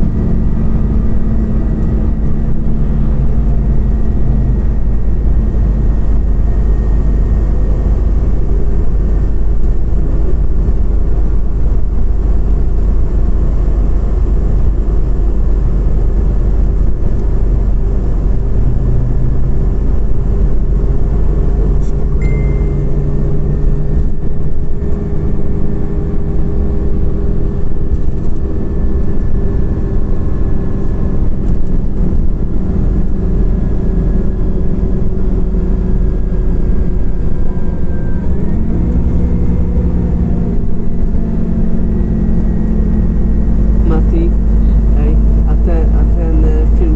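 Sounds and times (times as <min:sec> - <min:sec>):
bus engine and road rumble: 0:00.0 - 0:46.9
drivetrain whine: 0:00.0 - 0:46.9
short high beep: 0:22.2 - 0:23.1.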